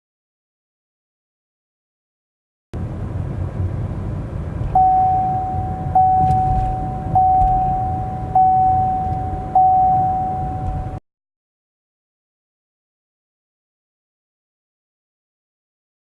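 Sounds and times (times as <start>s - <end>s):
low steady rumble: 2.8s - 11.0s
vehicle warning chime dinging: 4.7s - 11.0s.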